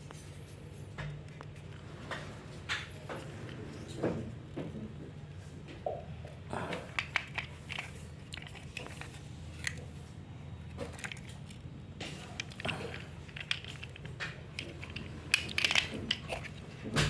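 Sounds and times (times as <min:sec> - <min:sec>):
low steady hum: 0:00.0 - 0:17.0
plastic parts clicking and crackling: 0:06.3 - 0:17.0.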